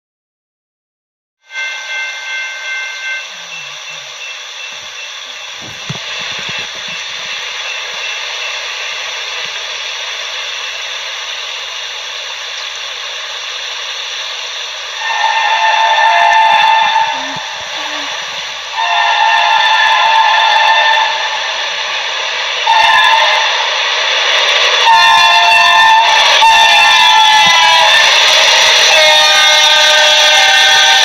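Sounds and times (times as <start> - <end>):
locomotive air horn: 1.4 - 4.9, 15.0 - 21.5, 22.6 - 23.6, 24.8 - 31.0
steady hiss: 2.6 - 20.1.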